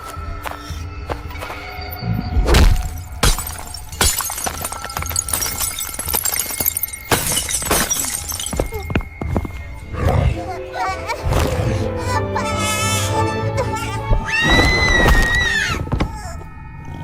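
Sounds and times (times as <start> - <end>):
glass breaking: 2.6 - 9.0.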